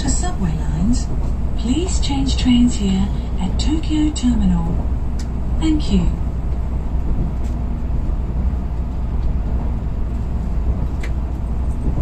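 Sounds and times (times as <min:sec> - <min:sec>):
train rumbling from inside: 0:00.0 - 0:12.0.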